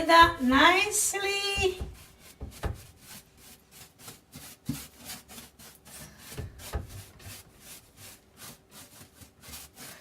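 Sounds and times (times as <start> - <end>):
scraping against wooden door frame: 1.5 - 7.8
dull knocks on wood: 1.6 - 2.9.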